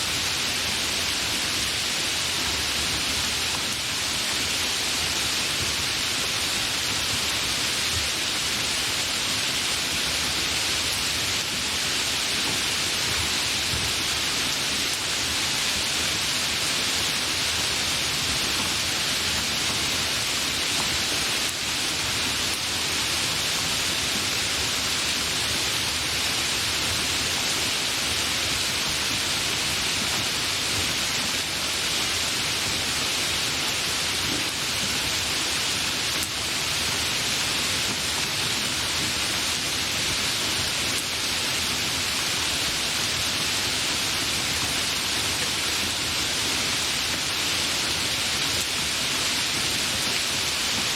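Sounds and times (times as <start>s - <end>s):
light rain hiss: 0.0s - 50.9s.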